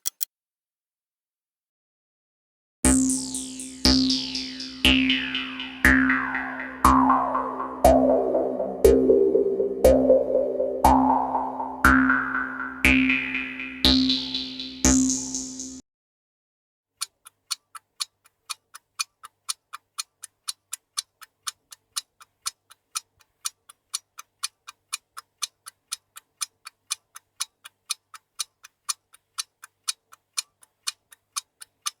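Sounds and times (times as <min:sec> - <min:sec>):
steady low tone: 0:03.4 - 0:15.8
clock ticking fast: 0:03.8 - 0:15.8, 0:17.0 - 0:32.0.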